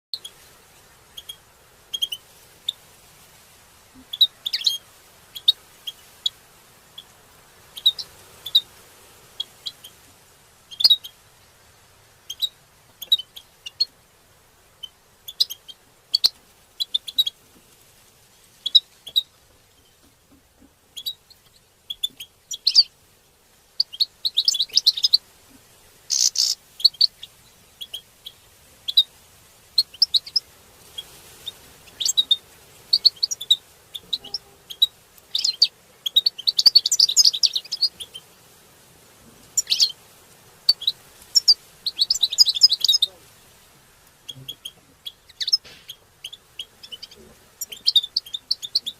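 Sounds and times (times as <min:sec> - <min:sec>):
goldfinches chirping: 0:01.0 - 0:02.8, 0:04.0 - 0:07.1, 0:07.7 - 0:08.7, 0:10.7 - 0:11.2, 0:12.2 - 0:14.0, 0:14.7 - 0:17.4, 0:20.9 - 0:23.0, 0:23.8 - 0:25.2, 0:26.1 - 0:29.1, 0:29.8 - 0:38.3, 0:39.5 - 0:40.0, 0:40.6 - 0:43.2, 0:44.2 - 0:48.9.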